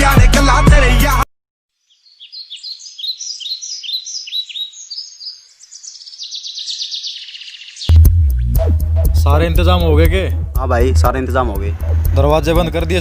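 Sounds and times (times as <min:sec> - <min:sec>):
rap song: 0:00.0 - 0:01.3
small birds chirping: 0:01.7 - 0:08.0.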